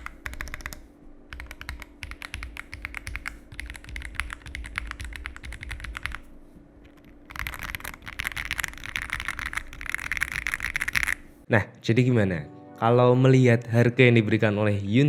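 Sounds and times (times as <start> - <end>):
mechanical keyboard typing: 0.0 - 6.2, 6.8 - 11.3.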